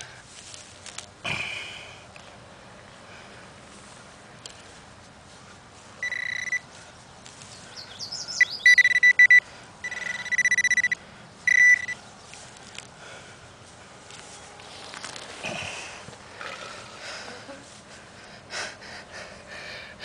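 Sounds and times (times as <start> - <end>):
metal detector pinpointer beeping: 6.0 - 6.7, 8.4 - 12.0.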